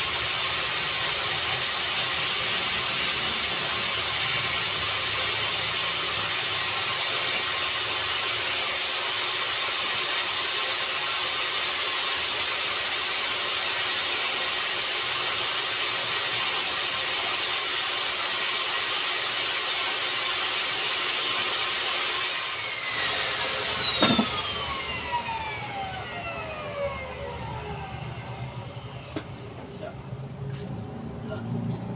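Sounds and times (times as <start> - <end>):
power tool whining: 0.0 - 29.6.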